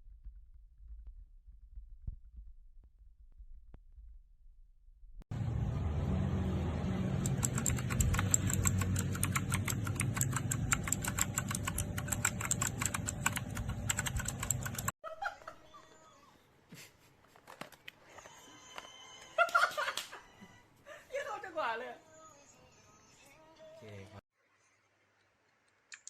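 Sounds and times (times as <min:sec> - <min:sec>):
fast typing on mechanical keyboard: 0:07.2 - 0:14.9.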